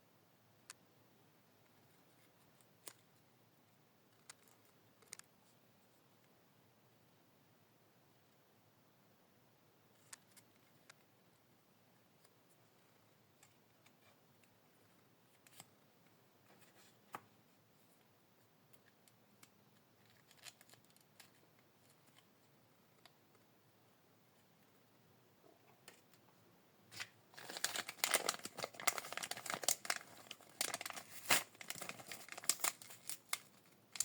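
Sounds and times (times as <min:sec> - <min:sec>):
faint clicks and taps of handling: 0:04.1 - 0:05.6.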